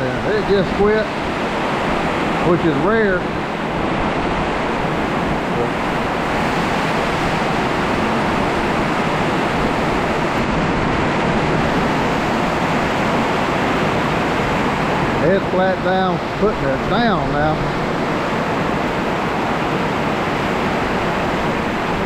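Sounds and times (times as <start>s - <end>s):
heavy wind-driven rain: 0.0s - 22.0s
high wind: 0.0s - 22.0s.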